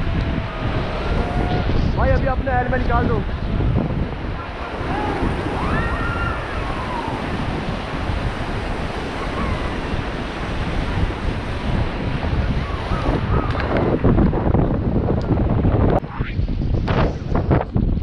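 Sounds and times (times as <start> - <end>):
rushing river water: 0.0 - 14.7
wind buffeting microphone: 0.0 - 18.0
faint voices calling out: 3.3 - 7.4.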